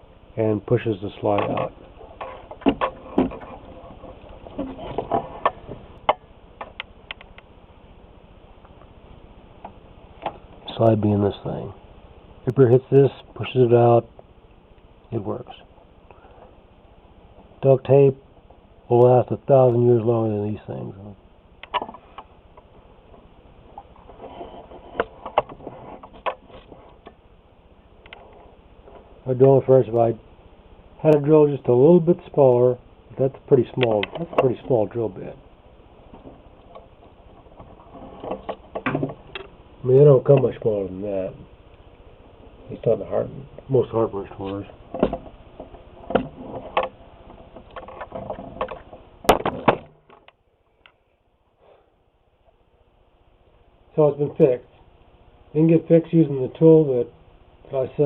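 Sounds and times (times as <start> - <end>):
sharp clicks: 6.6 - 7.5
small hard parts knocking and rattling: 44.9 - 50.4.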